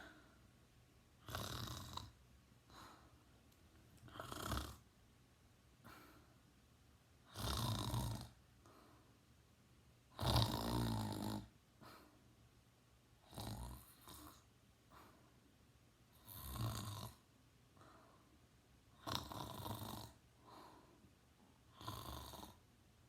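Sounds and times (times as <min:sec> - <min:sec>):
soft breaths: 0:00.0 - 0:00.6, 0:01.8 - 0:04.9, 0:05.8 - 0:06.6, 0:08.2 - 0:09.3, 0:11.7 - 0:12.5, 0:13.8 - 0:16.3, 0:17.1 - 0:18.5, 0:20.1 - 0:21.8
boy snoring: 0:01.2 - 0:02.2, 0:04.1 - 0:04.8, 0:07.3 - 0:08.4, 0:10.1 - 0:11.5, 0:13.2 - 0:14.4, 0:16.2 - 0:17.2, 0:19.0 - 0:20.2, 0:21.7 - 0:22.6.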